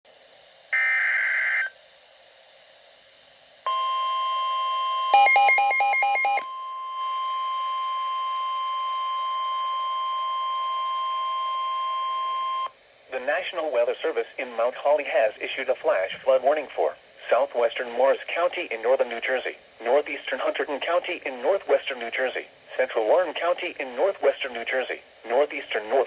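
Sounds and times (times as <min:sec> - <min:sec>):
steady warning alarm tone: 0:03.7 - 0:12.7.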